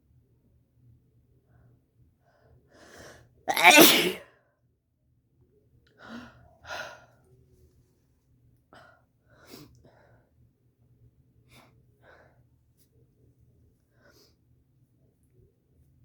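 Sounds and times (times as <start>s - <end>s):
breathy sounds: 3.5s - 4.2s
person sneezing: 3.5s - 4.2s.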